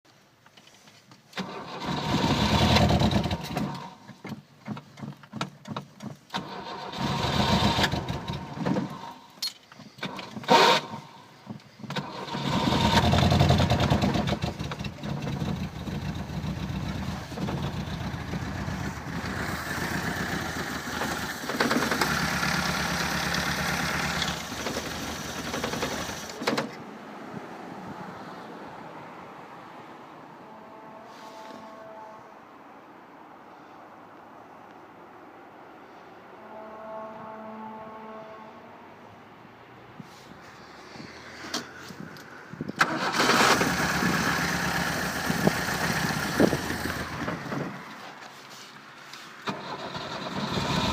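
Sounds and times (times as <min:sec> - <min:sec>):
engine cranking and running: 0:01.3 - 0:26.8, 0:41.4 - 0:48.1, 0:49.4 - 0:50.9.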